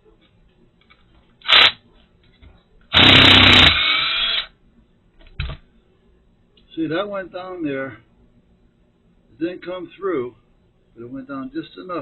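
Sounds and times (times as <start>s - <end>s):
power drill running in bursts: 1.5s - 1.8s, 2.9s - 4.5s.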